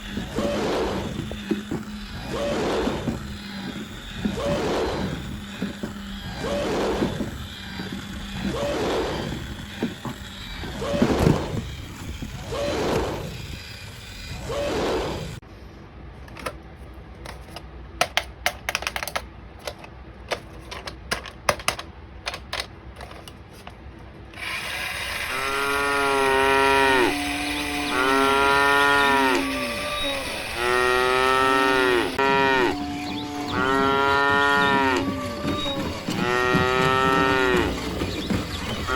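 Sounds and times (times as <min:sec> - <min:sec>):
toy gear clicking: 0:00.0 - 0:15.4, 0:17.2 - 0:23.7, 0:24.3 - 0:32.2
toy cow moos: 0:25.0 - 0:37.9.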